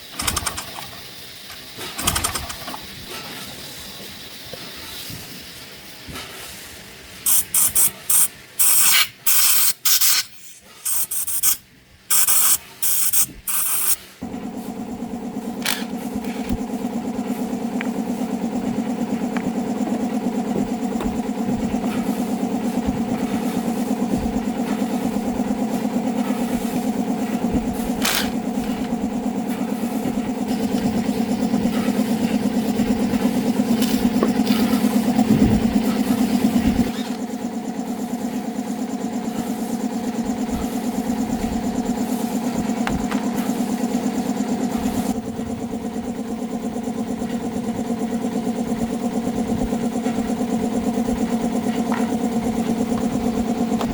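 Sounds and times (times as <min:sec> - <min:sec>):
short hissing spray blasts: 0:07.2 - 0:14.1
motor humming: 0:10.8 - 0:53.9.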